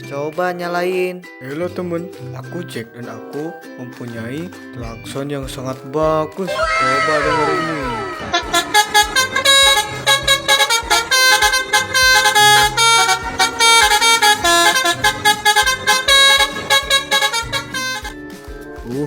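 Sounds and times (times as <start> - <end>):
multi-tone bus horn melody: 6.6 - 18.3.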